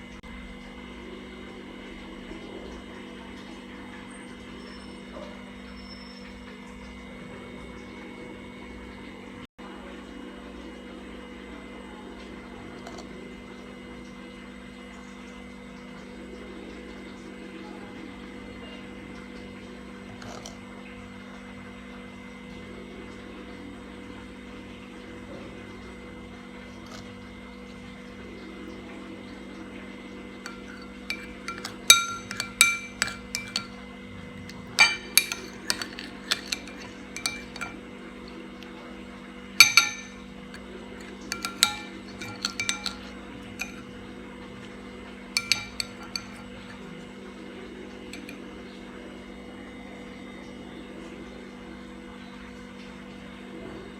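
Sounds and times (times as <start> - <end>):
steady low hum: 30.3 - 47.1
spoon clinking against glass: 30.5 - 33.8, 34.5 - 37.8, 39.6 - 43.9, 45.4 - 46.8, 48.2 - 48.4.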